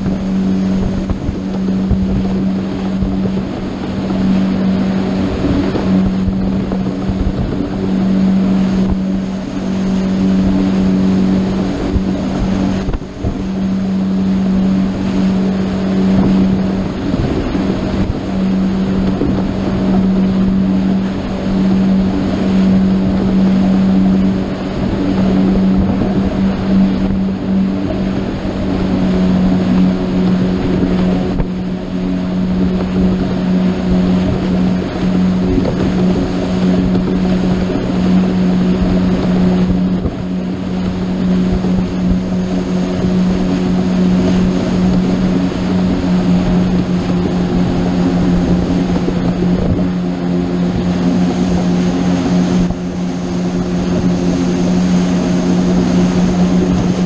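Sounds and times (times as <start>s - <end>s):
motorboat engine drone: 0.0s - 57.0s
rushing water: 0.0s - 57.0s
wind noise on microphone: 0.0s - 57.0s.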